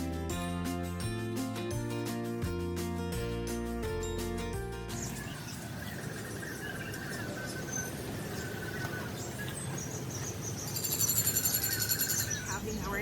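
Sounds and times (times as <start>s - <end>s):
background music: 0.0s - 6.6s
small birds chirping: 4.9s - 13.0s.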